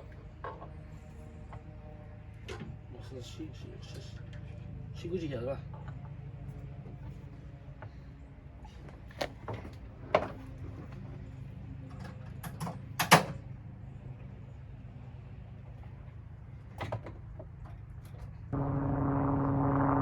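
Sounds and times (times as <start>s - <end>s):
low hum: 18.4s - 20.0s.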